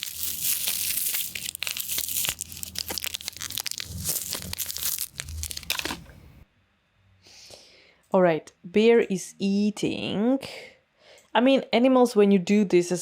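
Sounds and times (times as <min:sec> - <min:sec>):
coffee packet crinkling: 0:00.0 - 0:06.2.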